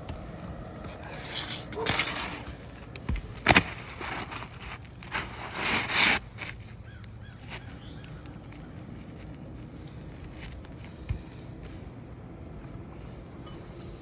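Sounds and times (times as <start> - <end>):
metal tool scraping shingles: 1.1 - 6.7.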